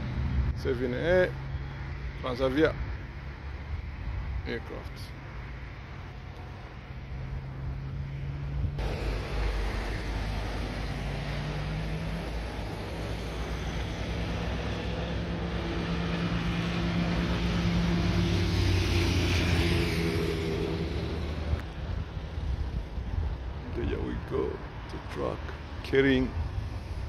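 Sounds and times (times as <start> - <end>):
jet engines roaring: 8.4 - 21.7.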